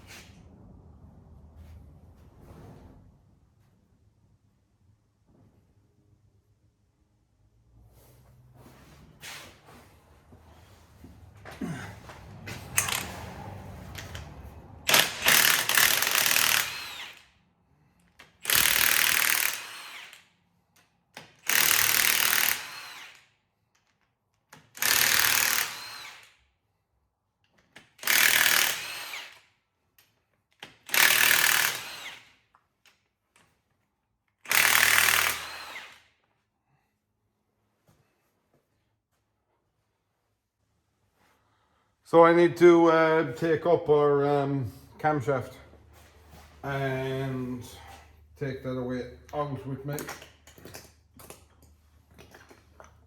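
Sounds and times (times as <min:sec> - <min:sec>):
impact wrench hammering: 0:14.9 - 0:17.3, 0:18.2 - 0:20.3, 0:21.2 - 0:23.2, 0:30.6 - 0:32.3, 0:34.4 - 0:36.1.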